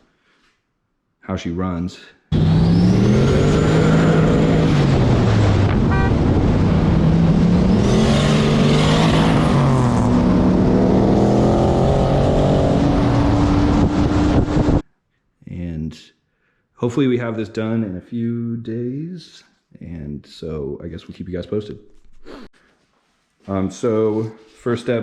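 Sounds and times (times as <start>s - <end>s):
car engine at full throttle: 2.3s - 14.8s
high turbo whistle: 5.7s - 6.4s.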